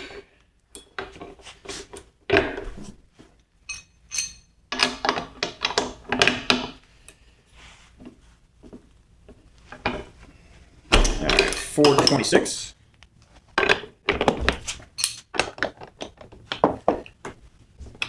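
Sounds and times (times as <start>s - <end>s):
metal tools clinking: 0.8s - 1.0s, 3.7s - 4.5s, 11.1s - 12.6s, 15.0s - 15.3s.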